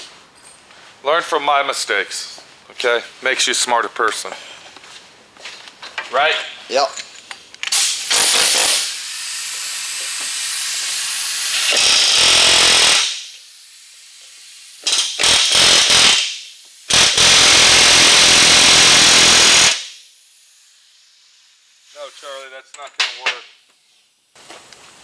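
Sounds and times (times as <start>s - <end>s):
pneumatic air chisel hammering: 7.6s - 13.4s, 14.2s - 20.0s.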